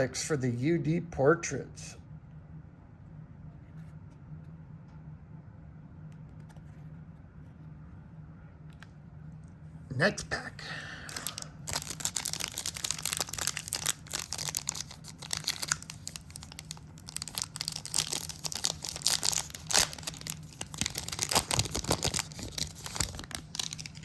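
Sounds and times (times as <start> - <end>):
foil pack tearing and crinkling: 11.1 - 24.0.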